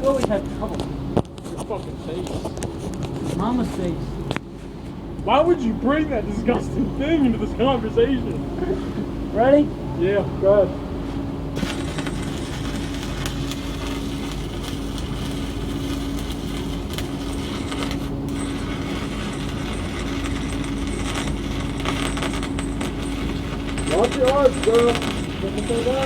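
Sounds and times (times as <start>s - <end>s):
steady hum: 0.0s - 26.0s
welding arc crackling: 11.6s - 26.0s.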